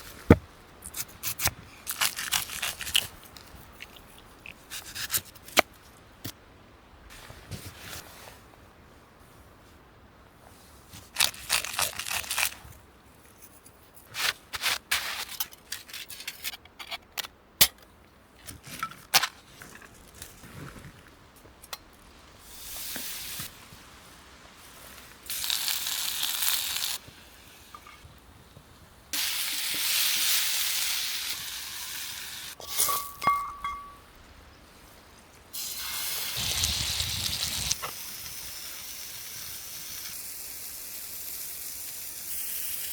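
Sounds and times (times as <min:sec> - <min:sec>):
food handling clicks and rustles: 0:11.0 - 0:21.8
steak sizzling in pan: 0:25.3 - 0:27.0.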